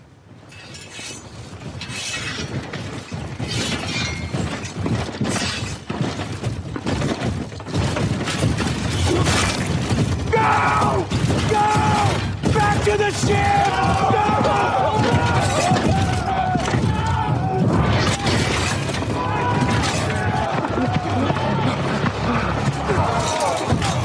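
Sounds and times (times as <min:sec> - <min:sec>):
shattering clattering crashes: 0:00.5 - 0:24.0.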